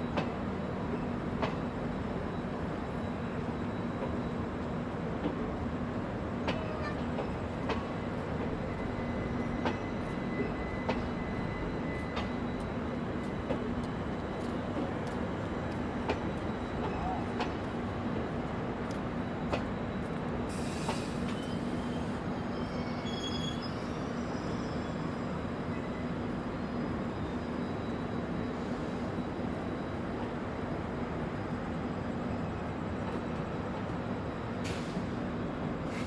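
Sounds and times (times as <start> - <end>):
faint thin squeals: 20.9 - 28.0.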